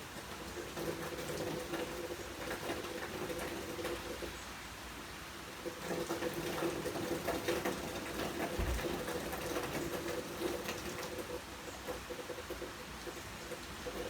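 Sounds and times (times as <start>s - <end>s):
rain pattering: 0.0s - 14.0s
soft low bump: 8.6s - 8.9s.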